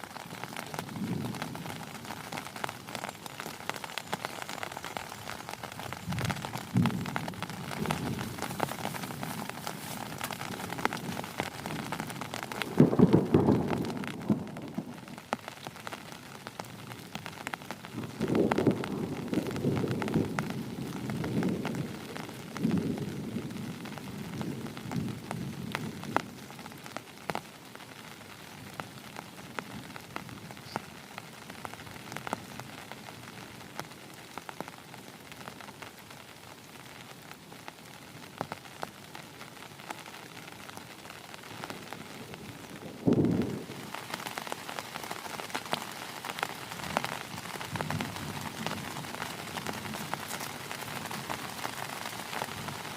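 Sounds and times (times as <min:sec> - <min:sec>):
heavy rain falling: 0:00.0 - 0:52.9
raindrops tapping on a surface: 0:00.0 - 0:52.9
thunder rolling: 0:06.1 - 0:09.6, 0:10.5 - 0:15.2, 0:18.0 - 0:23.8, 0:42.7 - 0:43.9.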